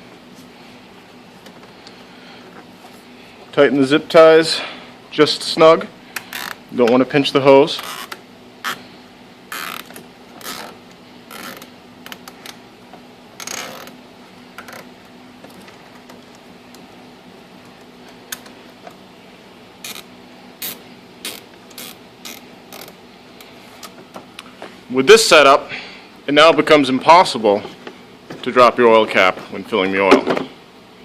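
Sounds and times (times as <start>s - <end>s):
faint steady hum: 0.0s - 31.0s
zip ties ratcheting: 6.2s - 6.6s, 7.8s - 8.8s, 9.5s - 12.2s, 19.8s - 23.0s.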